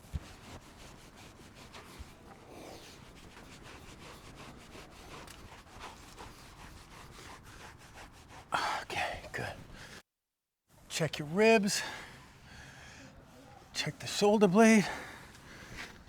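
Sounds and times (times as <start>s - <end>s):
rubbing and rustling: 0.0s - 9.5s.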